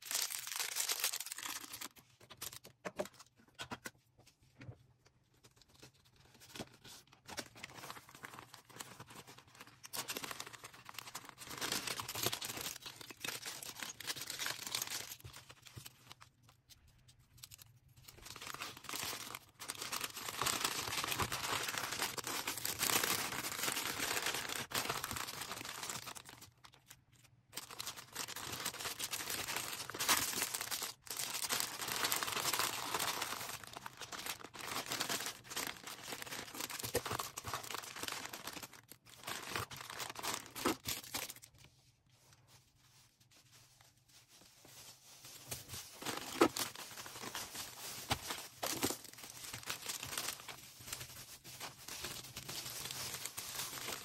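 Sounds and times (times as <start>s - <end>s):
packaging tearing: 0.0s - 2.6s, 7.3s - 15.8s, 18.1s - 26.5s, 27.6s - 41.5s
plastic and paper crinkling: 0.0s - 54.0s.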